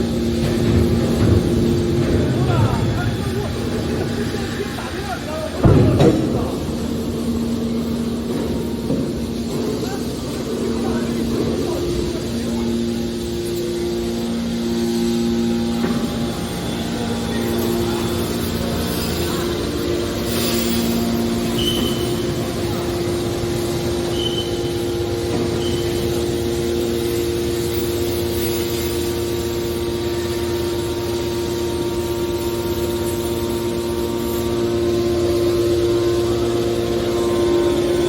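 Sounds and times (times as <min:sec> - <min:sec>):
hydraulic baler hum: 0:00.0 - 0:38.0
short high squeaks: 0:21.6 - 0:22.2, 0:24.1 - 0:24.7.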